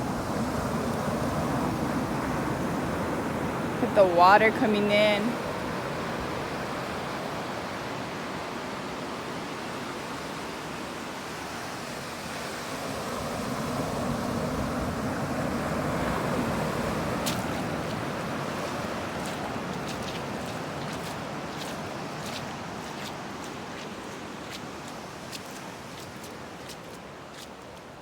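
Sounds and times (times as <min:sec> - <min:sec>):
surf washing over rocks: 0:00.0 - 0:28.0.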